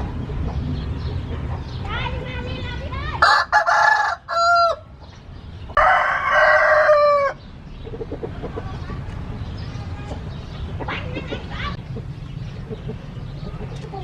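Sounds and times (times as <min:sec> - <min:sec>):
rooster crowing: 0:03.2 - 0:04.9, 0:05.8 - 0:07.4.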